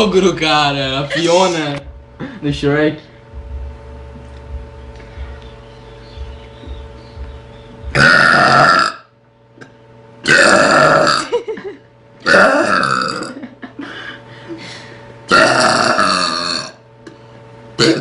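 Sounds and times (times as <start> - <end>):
girl belching: 8.0 - 9.1, 10.2 - 11.4, 12.2 - 13.4, 15.3 - 16.8, 17.8 - 18.0.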